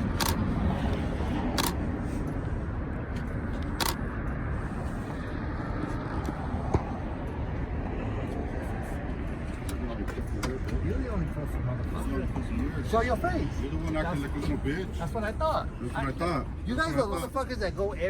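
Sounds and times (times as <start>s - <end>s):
low rumble of vehicles: 0.0s - 18.0s
sharp clicks: 0.1s - 0.4s.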